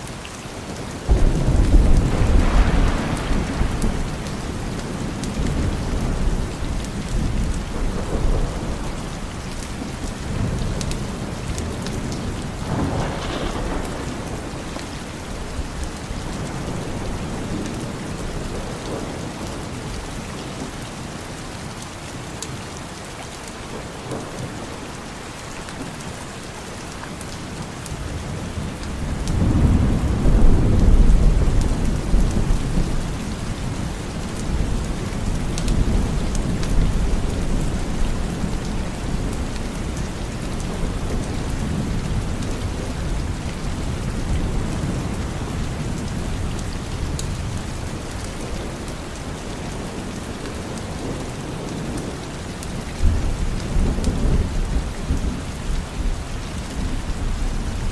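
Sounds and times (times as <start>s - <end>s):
steady rain: 0.0s - 57.9s
rolling thunder: 1.1s - 19.4s, 28.2s - 48.8s.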